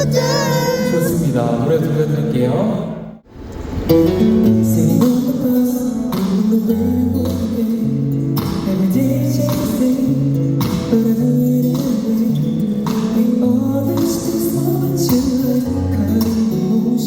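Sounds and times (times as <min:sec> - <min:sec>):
person singing: 0:00.0 - 0:01.6, 0:04.5 - 0:17.0
live rock band over sound system: 0:04.0 - 0:17.0.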